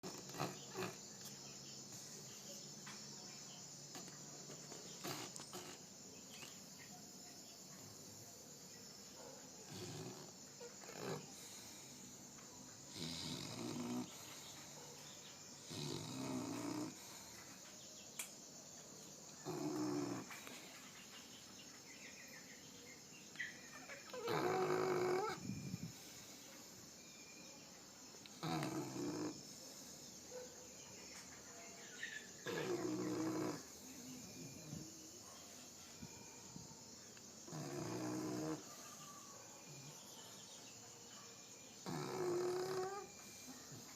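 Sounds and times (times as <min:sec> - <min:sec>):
puppy snoring: 0:00.0 - 0:01.4, 0:03.9 - 0:06.0, 0:09.6 - 0:12.3, 0:12.9 - 0:14.8, 0:15.6 - 0:17.3, 0:19.4 - 0:20.7, 0:24.0 - 0:26.5, 0:28.2 - 0:29.9, 0:32.4 - 0:35.0, 0:37.4 - 0:39.0, 0:41.8 - 0:43.9.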